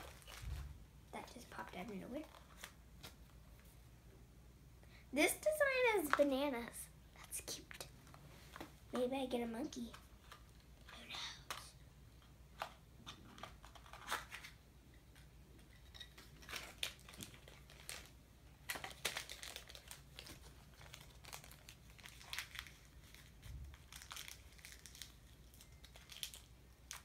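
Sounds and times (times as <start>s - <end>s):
plastic package crinkling and tearing: 0.0s - 0.7s, 13.1s - 14.6s, 15.8s - 27.0s.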